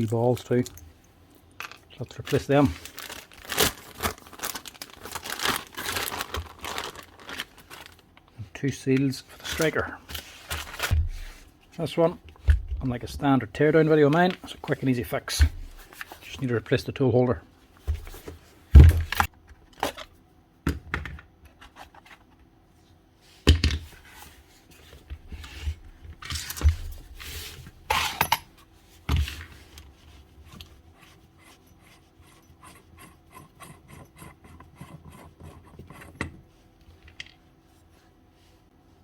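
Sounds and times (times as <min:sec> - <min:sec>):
metal parts clinking and knocking: 0:27.9 - 0:28.5.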